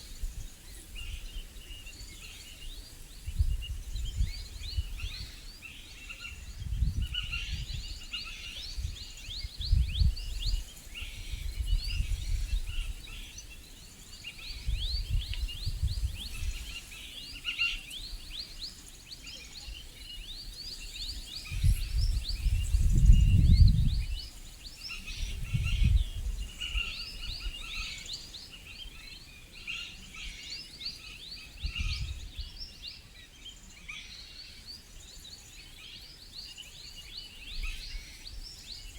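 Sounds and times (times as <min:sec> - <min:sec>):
small birds chirping: 0:00.0 - 0:38.9
wind buffeting microphone: 0:03.1 - 0:05.6, 0:06.3 - 0:13.5, 0:14.4 - 0:16.8, 0:20.6 - 0:27.9, 0:31.5 - 0:32.6.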